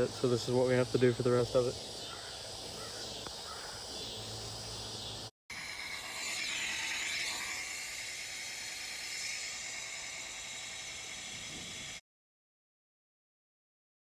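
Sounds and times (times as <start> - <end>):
shop vac sucking water: 5.5 - 12.0.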